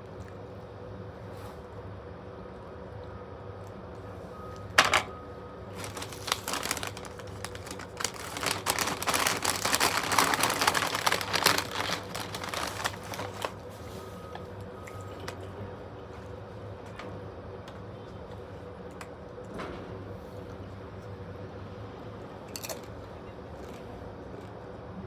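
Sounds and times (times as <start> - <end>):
food packaging crinkling: 5.7 - 14.0.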